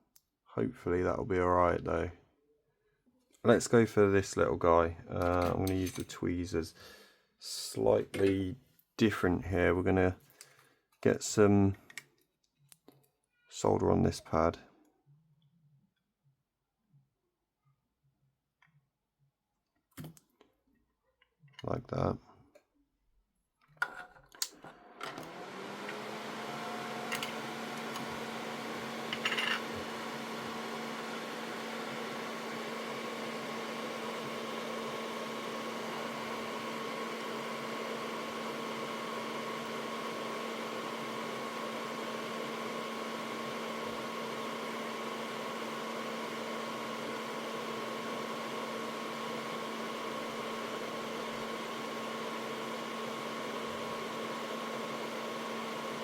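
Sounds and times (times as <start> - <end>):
electric fan motor humming: 24.7 - 56.0.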